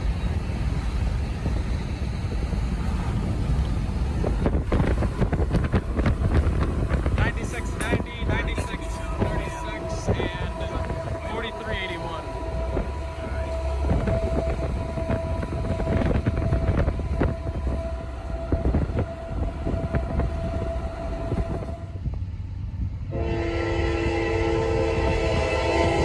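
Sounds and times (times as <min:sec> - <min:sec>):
freight train rumbling: 0:00.0 - 0:26.0
locomotive horn chord: 0:06.3 - 0:22.0, 0:23.1 - 0:26.0.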